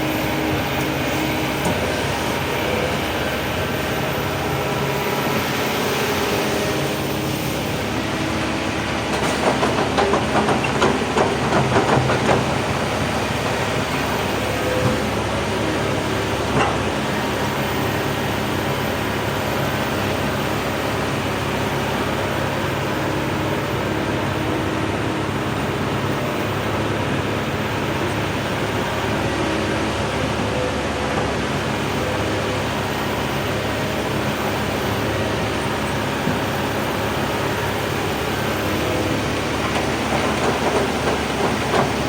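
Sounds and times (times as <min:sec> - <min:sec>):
excavator diesel engine droning: 0:00.0 - 0:42.0.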